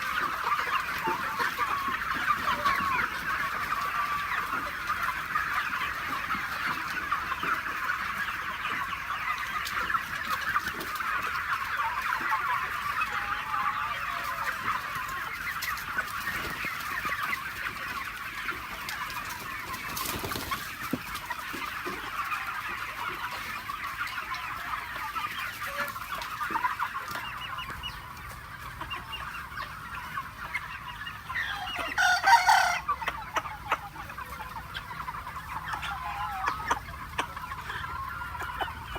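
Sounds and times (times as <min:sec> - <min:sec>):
chickens clucking: 0:00.0 - 0:38.9
rooster crowing: 0:31.9 - 0:32.9.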